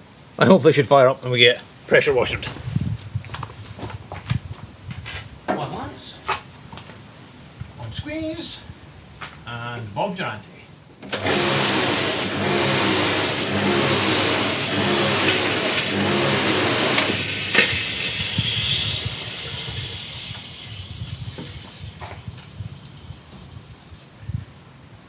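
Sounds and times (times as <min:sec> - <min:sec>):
pressure washer motor hum: 0:11.0 - 0:23.4
water jet hissing: 0:11.1 - 0:23.6.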